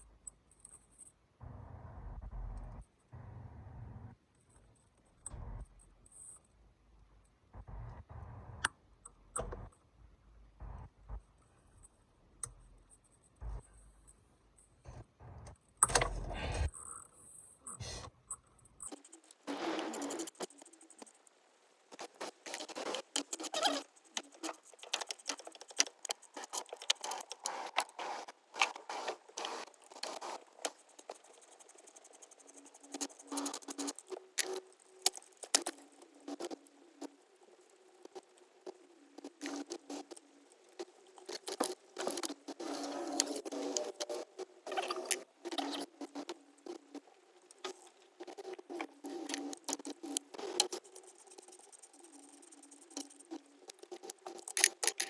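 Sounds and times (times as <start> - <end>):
low hum: 1.4 - 4.2, 7.6 - 8.7.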